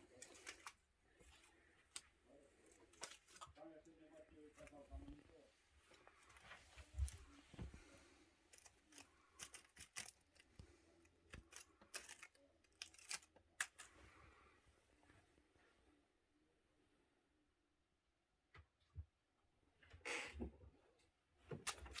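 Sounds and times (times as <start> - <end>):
cat claws scratching: 0.0 - 3.7, 8.4 - 14.0, 21.6 - 22.0.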